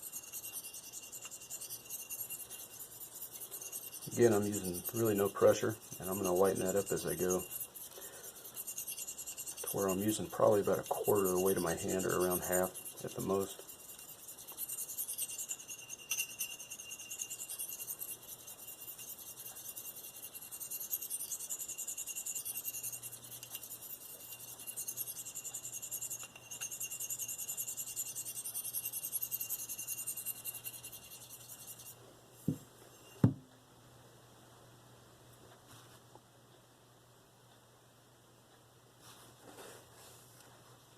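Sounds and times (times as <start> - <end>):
blade scraping on sharpening stone: 0.0 - 32.0.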